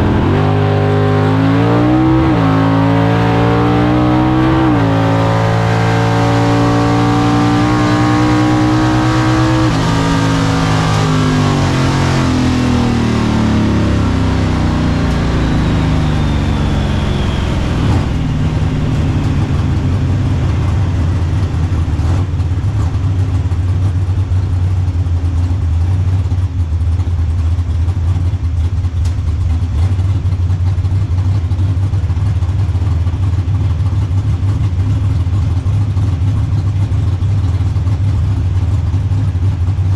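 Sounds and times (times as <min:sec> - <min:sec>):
car engine revving: 0:00.0 - 0:24.2.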